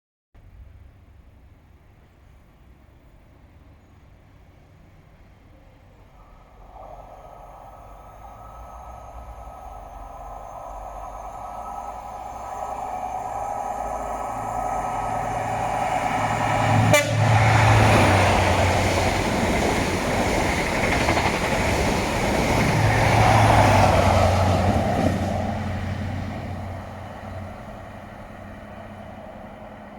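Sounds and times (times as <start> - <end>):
train passing at speed: 0.4 - 29.9
low diesel hum: 5.5 - 19.6
train horn: 16.8 - 17.9.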